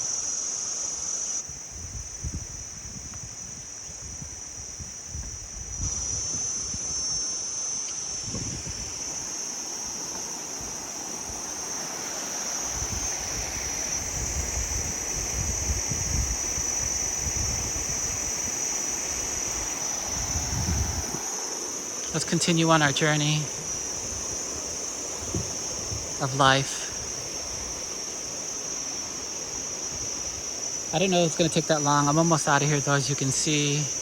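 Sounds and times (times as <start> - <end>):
insects buzzing: 0.0 - 34.0
wind buffeting microphone: 1.4 - 7.4, 8.1 - 12.0, 12.6 - 21.4, 22.0 - 28.4.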